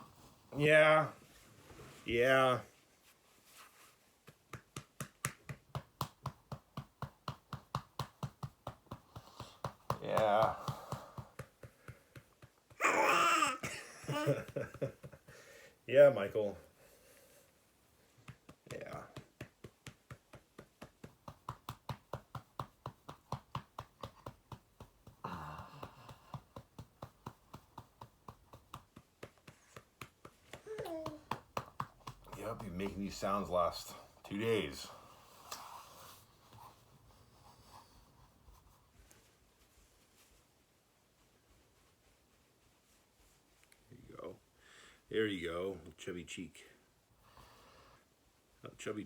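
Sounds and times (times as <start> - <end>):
infant clicking with mouth: 23.8 - 32.8
baby making clicking sounds: 30.5 - 32.7.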